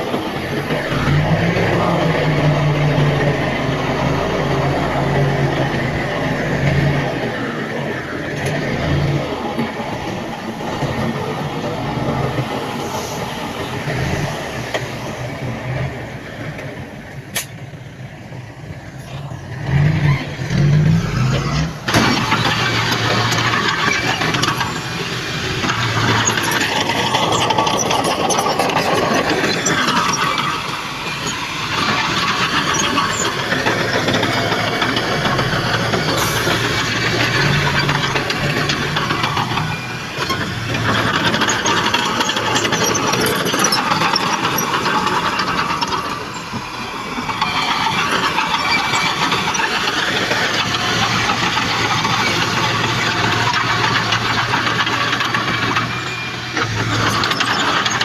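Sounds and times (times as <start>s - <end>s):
heavy machinery diesel engines: 0.0s - 58.0s.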